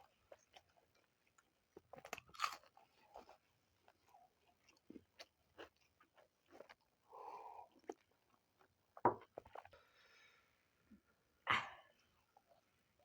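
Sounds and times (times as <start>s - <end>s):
crunchy bites: 1.7s - 4.0s.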